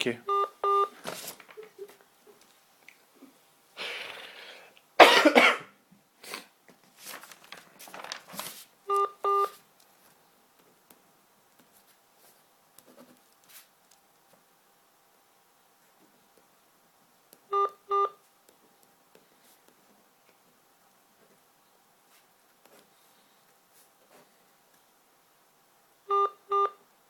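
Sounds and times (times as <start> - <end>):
telephone keypad beeps: 0.3 - 0.9, 8.9 - 9.5, 17.5 - 18.2, 26.1 - 26.8
cough over telephone line: 5.0 - 5.8.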